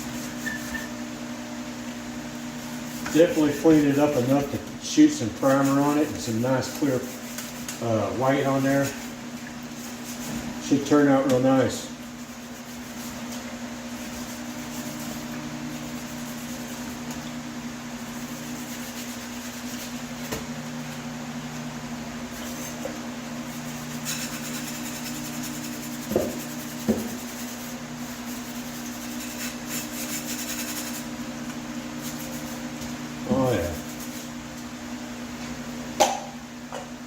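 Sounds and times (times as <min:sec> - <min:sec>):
steady hum: 0:00.0 - 0:37.0
sanding sponge scratching metal: 0:02.9 - 0:13.3, 0:13.9 - 0:17.0, 0:18.0 - 0:20.3, 0:22.3 - 0:31.1, 0:32.0 - 0:32.7, 0:33.3 - 0:34.3.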